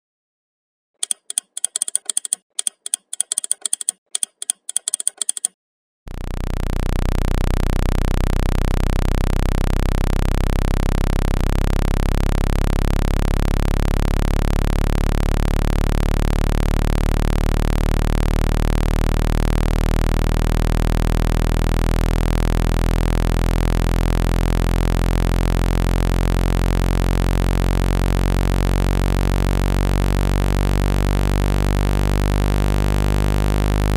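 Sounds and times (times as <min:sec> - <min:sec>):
quick run of clicks: 0:01.0 - 0:05.6
low synthesized drone: 0:06.1 - 0:33.9.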